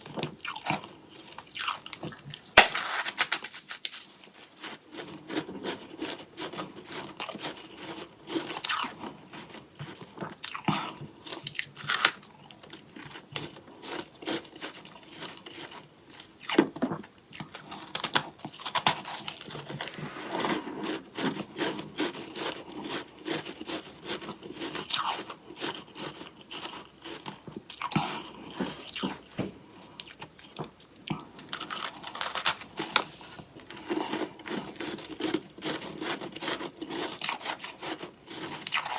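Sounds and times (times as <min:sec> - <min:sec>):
person crunching ice: 0:01.4 - 0:08.0, 0:17.4 - 0:29.3, 0:30.0 - 0:38.9.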